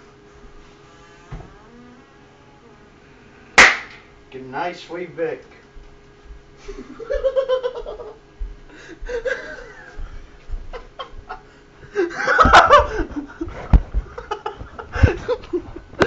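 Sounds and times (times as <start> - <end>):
person laughing: 6.6 - 8.2, 8.8 - 15.9.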